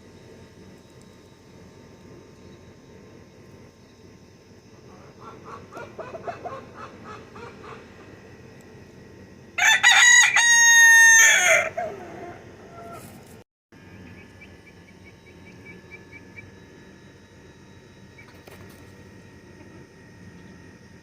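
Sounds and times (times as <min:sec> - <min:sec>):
rooster crowing: 0:09.6 - 0:13.1.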